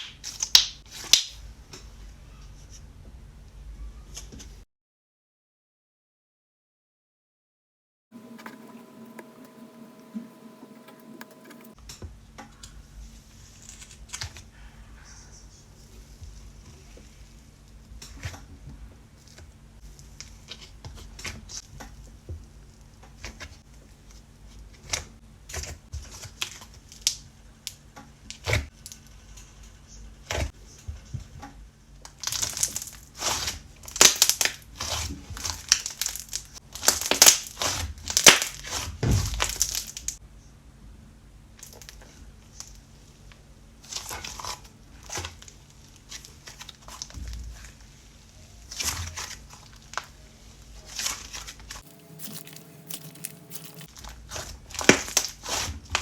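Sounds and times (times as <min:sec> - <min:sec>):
crinkling and crackling: 0:50.8 - 0:55.3.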